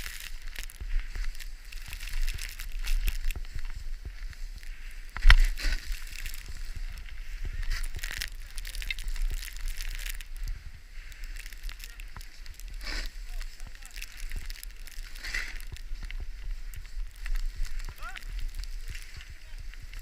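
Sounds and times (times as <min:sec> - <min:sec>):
wind rumbling on microphone: 0:00.0 - 0:20.0
edges scraping over icy snow: 0:05.2 - 0:10.3, 0:11.2 - 0:20.0.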